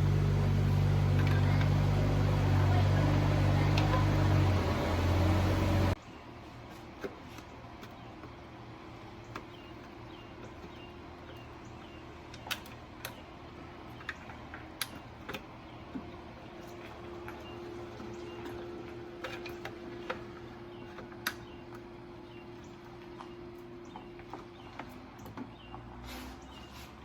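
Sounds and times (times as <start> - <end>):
loud motor hum: 0.0 - 6.0.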